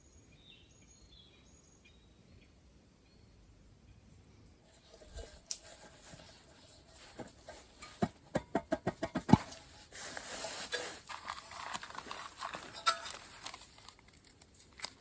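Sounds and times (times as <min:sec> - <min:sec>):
rustle: 0:00.3 - 0:15.0.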